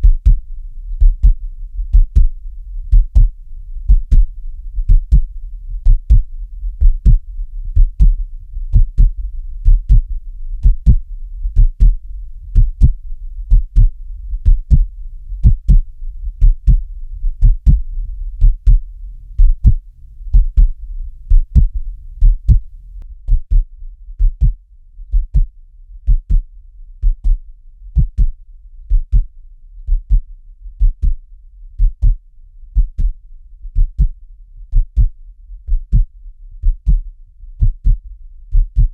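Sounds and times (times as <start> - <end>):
low continuous hum: 0.0 - 23.0
heartbeat double thump: 0.0 - 25.5, 26.1 - 26.4, 27.0 - 27.4, 28.0 - 29.3, 29.9 - 30.2, 30.8 - 31.2, 31.8 - 32.2, 32.8 - 33.2, 33.8 - 37.0, 37.6 - 38.0, 38.6 - 38.9.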